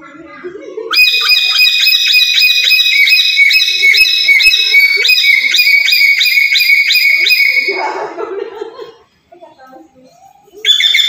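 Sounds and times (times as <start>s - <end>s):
parrot shrill calls: 0.9s - 8.1s, 10.6s - 11.0s.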